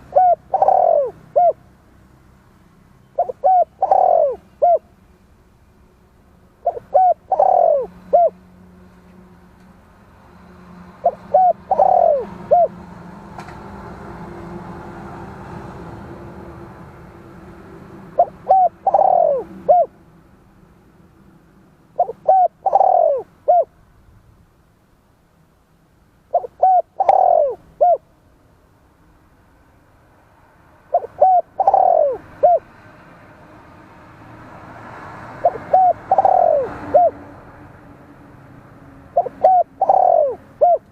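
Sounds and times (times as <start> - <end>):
dove cooing: 0.0 - 1.6, 3.2 - 4.9, 6.6 - 8.4, 11.0 - 12.8, 18.1 - 20.0, 22.0 - 23.7, 26.3 - 28.0, 30.9 - 32.7, 35.4 - 37.2, 39.1 - 40.9.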